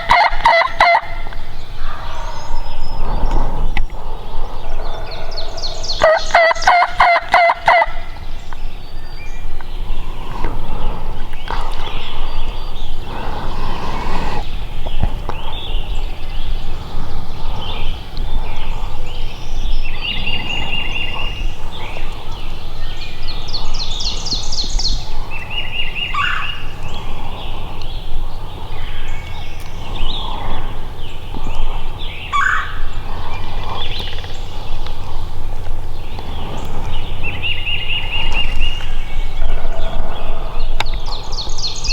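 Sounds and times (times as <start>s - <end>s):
turkey gobbling: 0.0s - 2.4s, 5.7s - 8.2s.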